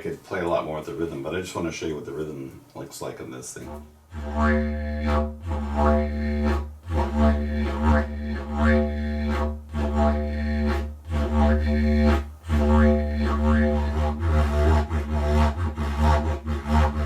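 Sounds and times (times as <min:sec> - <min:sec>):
didgeridoo rhythmic drone: 0:03.7 - 0:17.0.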